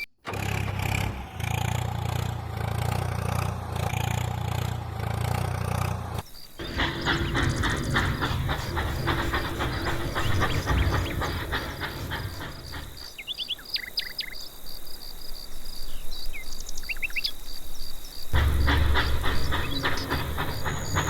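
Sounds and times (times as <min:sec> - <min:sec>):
small machine clattering: 0:00.3 - 0:13.3, 0:18.3 - 0:21.0
birds chirping: 0:05.9 - 0:21.0.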